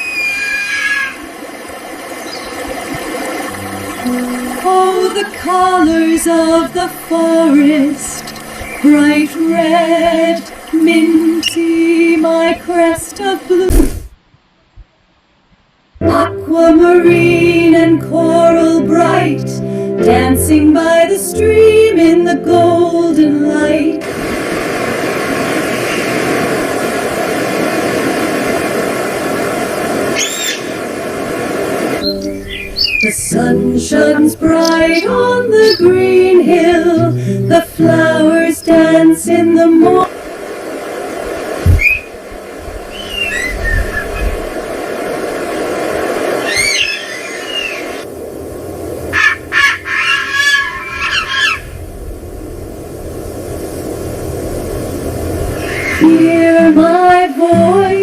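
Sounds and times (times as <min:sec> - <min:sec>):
whistled call: 0:00.0 - 0:01.2, 0:30.2 - 0:30.8, 0:32.0 - 0:33.2, 0:34.6 - 0:36.0, 0:41.7 - 0:42.2, 0:42.9 - 0:44.4, 0:46.4 - 0:48.0, 0:55.6 - 0:56.2
steady rushing noise: 0:01.2 - 0:14.2, 0:23.7 - 0:58.0.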